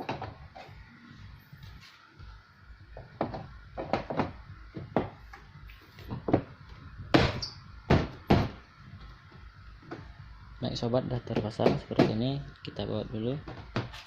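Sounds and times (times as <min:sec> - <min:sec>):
washing machine parts knocking: 0:03.0 - 0:05.2, 0:11.3 - 0:12.3.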